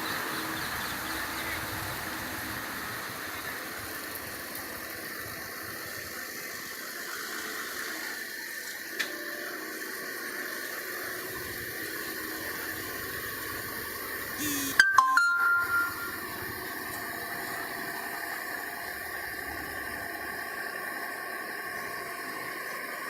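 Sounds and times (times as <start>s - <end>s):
short high tones: 14.4s - 16.4s.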